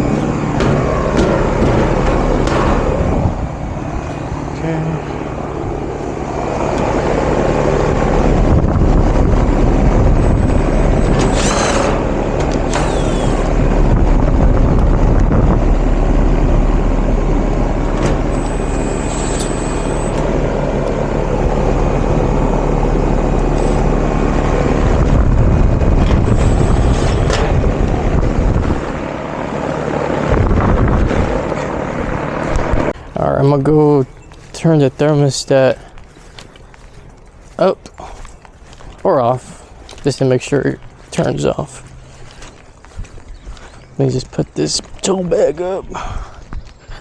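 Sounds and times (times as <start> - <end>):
handling clicks and squeaks: 0.0 - 29.1, 31.4 - 45.7
condenser fan rushing: 0.0 - 45.9
compressor low hum: 0.0 - 47.0.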